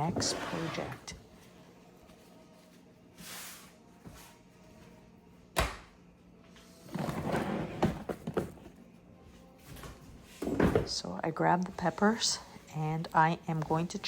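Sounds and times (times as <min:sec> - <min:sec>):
kitchen items clunking and clattering: 0:00.0 - 0:01.2, 0:06.9 - 0:08.8, 0:09.8 - 0:11.0.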